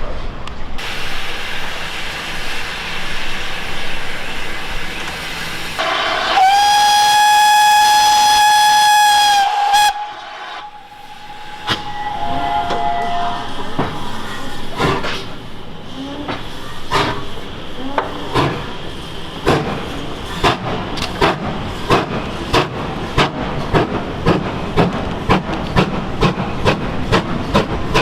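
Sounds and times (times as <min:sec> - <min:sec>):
train hiss and running noise: 0:00.5 - 0:28.0
steam locomotive whistle: 0:05.8 - 0:13.7.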